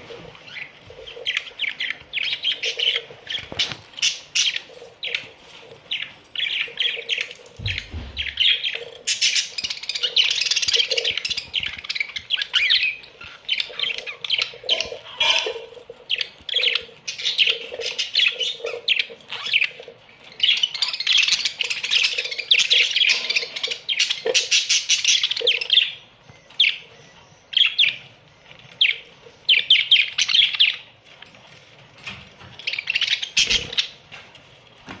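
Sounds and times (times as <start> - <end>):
budgerigars chattering and chirping: 0.0 - 34.2
bird squawks: 0.4 - 26.8.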